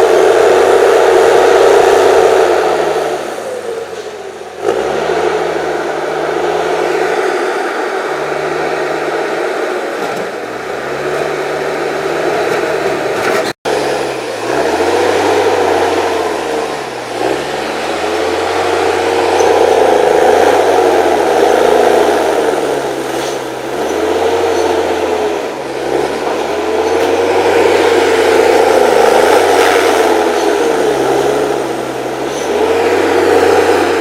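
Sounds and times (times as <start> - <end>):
machine engine revving: 0.0 - 34.0.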